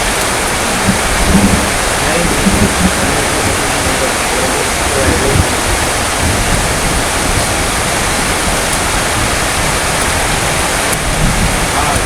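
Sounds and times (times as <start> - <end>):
heavy rain falling: 0.0 - 12.0.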